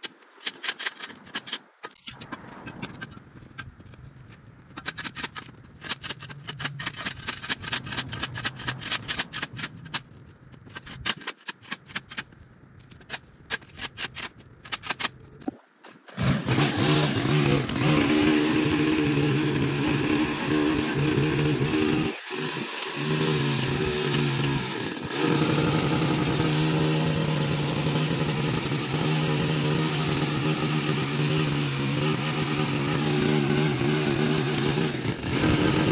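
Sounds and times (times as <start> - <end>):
rapid scraping and clicking: 0.0 - 18.8.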